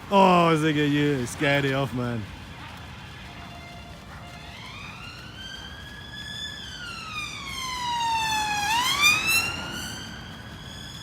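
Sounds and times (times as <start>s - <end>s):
emergency siren wailing: 0.0s - 11.0s.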